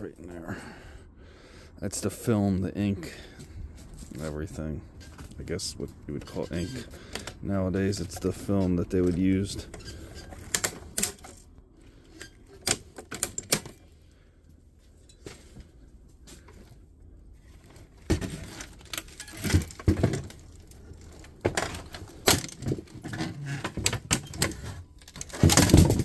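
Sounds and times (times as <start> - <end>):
rattling and knocking: 17.8 - 26.0.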